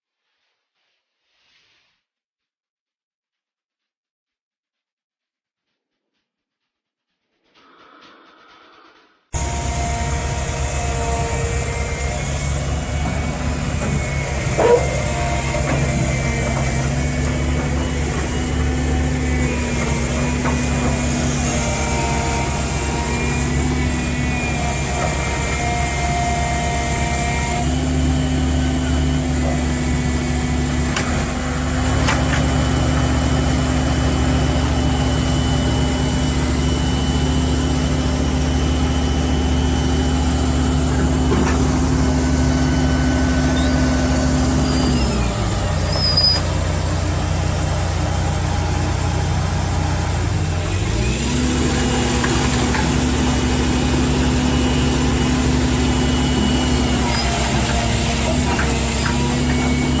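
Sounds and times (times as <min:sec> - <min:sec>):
heavy machine engine running: 0:09.4 - 1:00.0.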